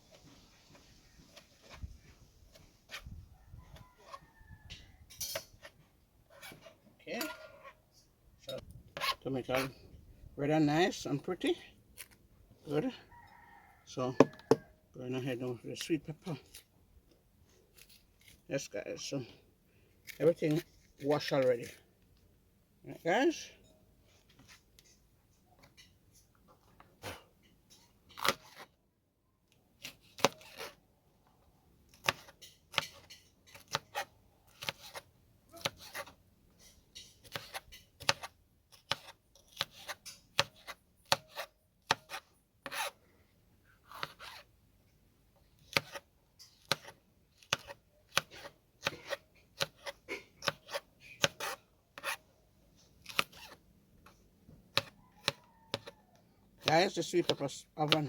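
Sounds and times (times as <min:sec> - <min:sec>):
knife chopping peppers: 0:31.9 - 0:43.0, 0:43.9 - 0:44.5, 0:45.7 - 0:52.2, 0:53.0 - 0:56.0, 0:56.6 - 0:58.0.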